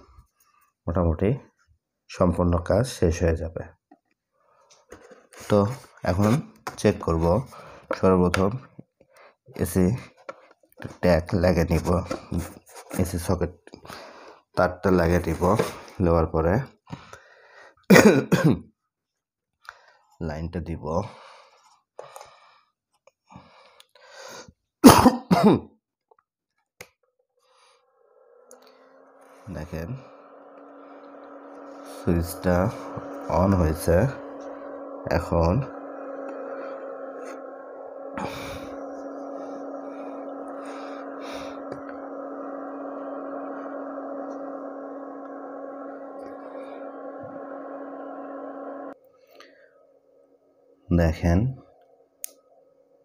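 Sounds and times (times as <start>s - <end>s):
small fan whirring: 4.6s - 16.6s, 27.5s - 53.0s
man coughing: 17.9s - 18.6s, 24.8s - 25.7s.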